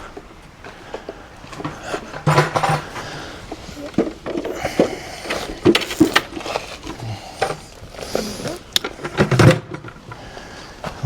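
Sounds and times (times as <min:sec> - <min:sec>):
objects being handled: 0:01.0 - 0:09.8.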